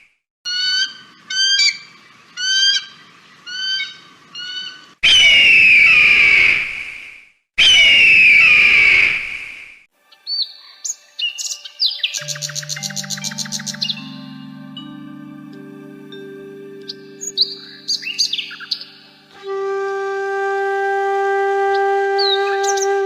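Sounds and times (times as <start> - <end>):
birds squawking and screeching: 0.5 - 6.1, 10.3 - 14.8, 16.6 - 19.3.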